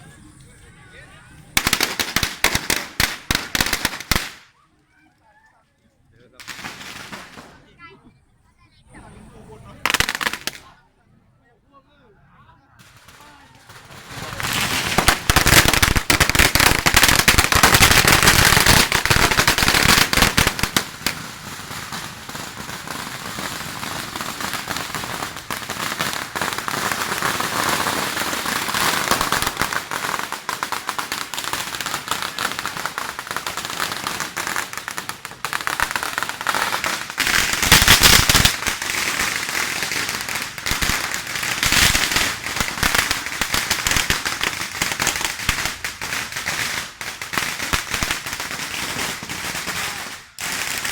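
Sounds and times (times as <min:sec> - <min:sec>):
firecrackers crackling: 0:00.0 - 0:04.7, 0:06.2 - 0:08.0, 0:09.5 - 0:10.9, 0:12.8 - 0:50.9.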